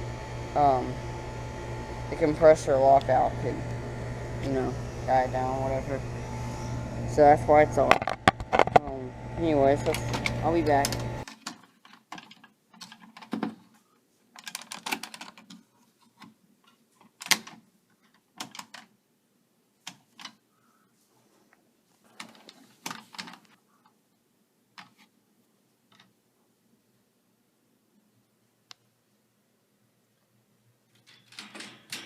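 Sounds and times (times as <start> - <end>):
irregular clicks and knocks: 9.9 - 13.8, 14.4 - 18.9, 22.1 - 23.6, 24.8 - 25.1, 30.9 - 32.0
rustling: 19.8 - 24.0.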